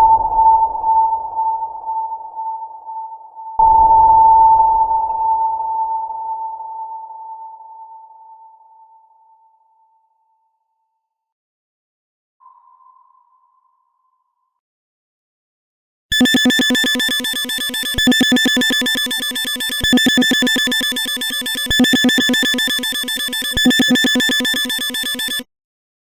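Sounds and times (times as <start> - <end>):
pulsing electronic alarm buzz: 16.1 - 25.5.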